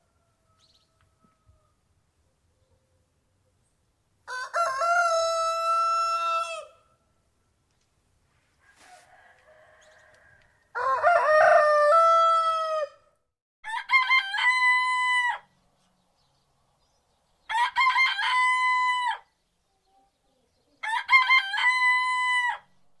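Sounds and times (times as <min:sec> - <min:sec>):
faint distant rooster call: 0:00.0 - 0:02.0, 0:04.2 - 0:07.1, 0:08.5 - 0:15.6
roosters crowing: 0:04.2 - 0:06.9, 0:08.6 - 0:15.5, 0:17.5 - 0:19.3, 0:20.8 - 0:22.7.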